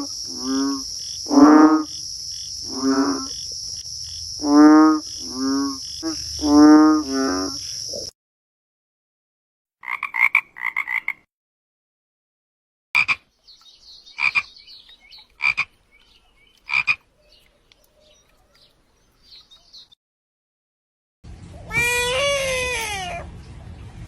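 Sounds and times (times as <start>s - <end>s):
frog croaking: 0.0s - 8.1s, 9.8s - 11.3s, 13.0s - 13.2s, 14.2s - 14.6s, 15.4s - 15.7s, 16.7s - 17.1s.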